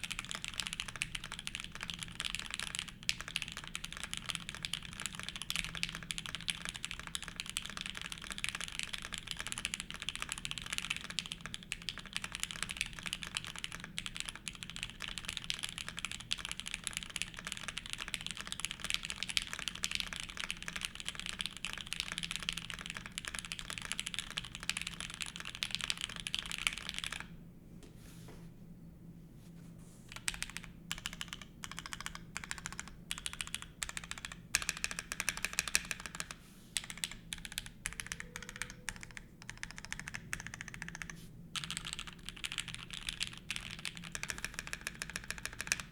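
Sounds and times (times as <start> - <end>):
typing on mechanical keyboard: 0.0 - 27.3, 30.1 - 45.9.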